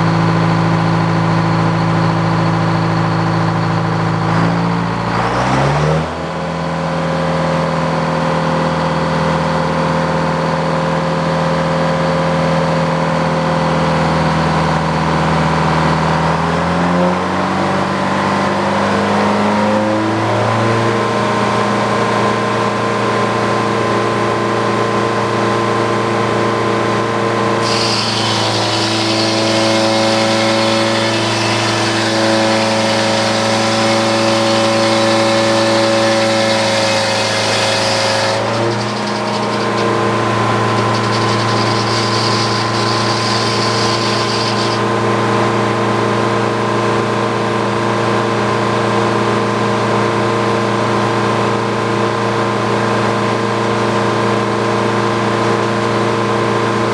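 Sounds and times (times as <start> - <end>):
sawmill engine drone: 0.0 - 56.9
hissing rush: 38.4 - 44.8.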